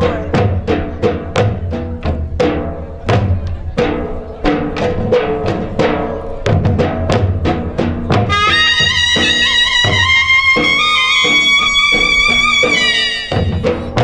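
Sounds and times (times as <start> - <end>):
pitched drum strokes: 0.0 - 14.0
high melody line: 8.2 - 14.0.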